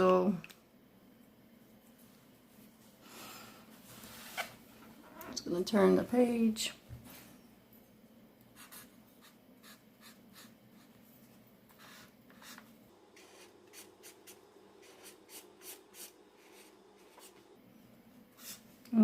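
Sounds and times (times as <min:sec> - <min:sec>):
marker scratching on paper: 0:08.6 - 0:10.9, 0:11.7 - 0:17.4, 0:18.4 - 0:18.6.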